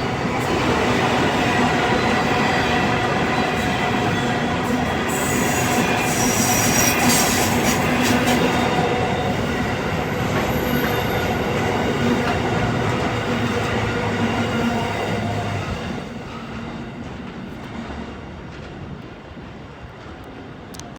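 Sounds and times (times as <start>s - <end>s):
train wheels rolling on rails: 0.0s - 20.9s
high wheel squeal: 4.0s - 11.8s.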